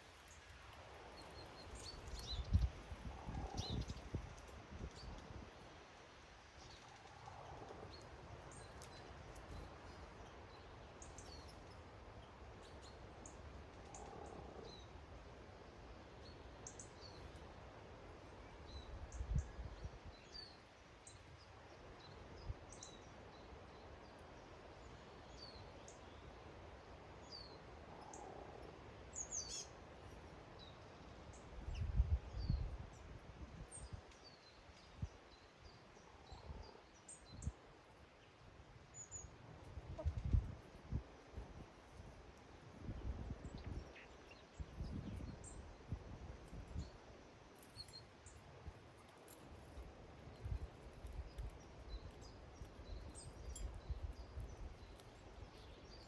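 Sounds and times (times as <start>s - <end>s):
small birds chirping: 1.1s - 5.4s, 29.1s - 56.0s.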